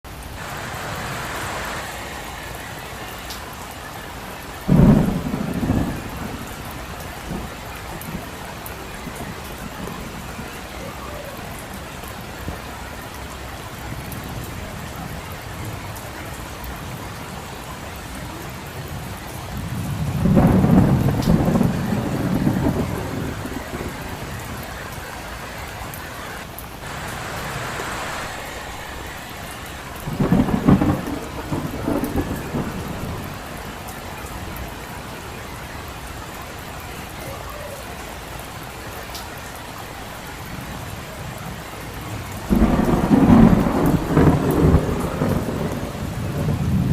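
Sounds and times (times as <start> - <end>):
heavy rain falling: 0.0 - 46.9
thunder rolling: 0.4 - 11.0, 18.8 - 34.8, 42.1 - 46.9.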